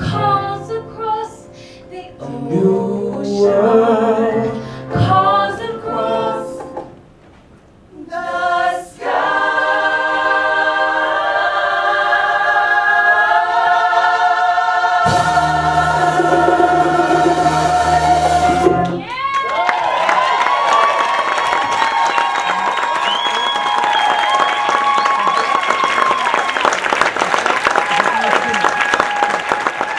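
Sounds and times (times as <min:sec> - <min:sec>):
choir singing: 0:00.1 - 0:06.9, 0:07.9 - 0:19.1.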